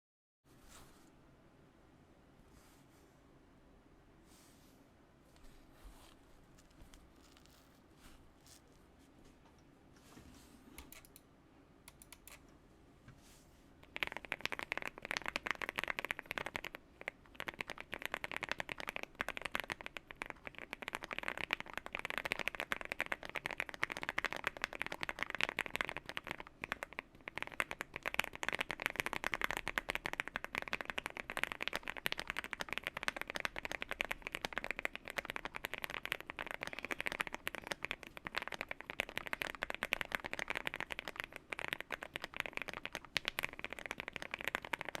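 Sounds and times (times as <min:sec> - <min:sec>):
fast typing on mechanical keyboard: 0:13.9 - 0:45.0.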